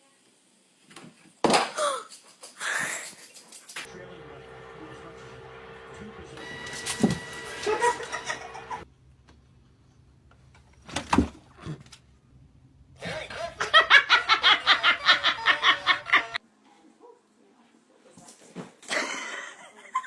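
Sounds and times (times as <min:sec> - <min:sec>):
person laughing hard: 0:13.4 - 0:16.4.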